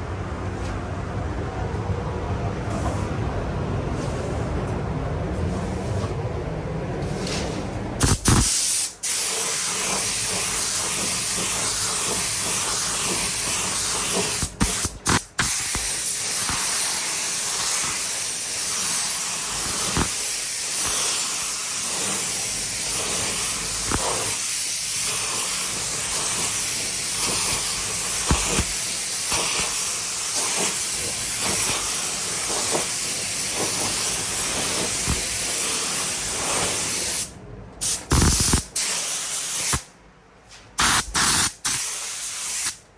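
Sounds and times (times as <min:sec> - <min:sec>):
paint spray gun hissing: 0:08.0 - 0:39.8, 0:40.8 - 0:42.8.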